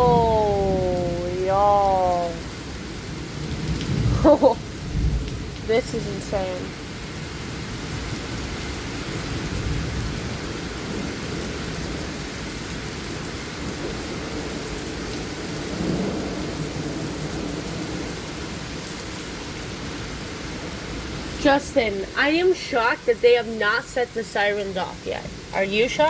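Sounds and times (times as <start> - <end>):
heavy rain: 0.0 - 26.0.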